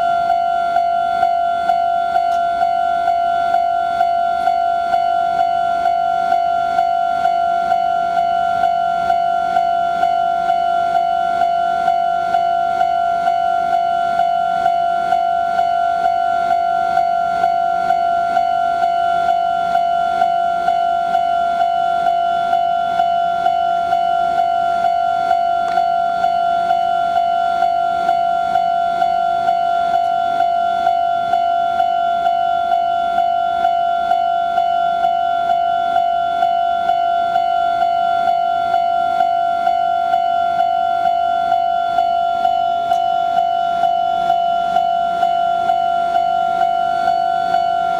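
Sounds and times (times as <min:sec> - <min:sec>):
level-crossing warning bell: 0:00.0 - 0:47.9.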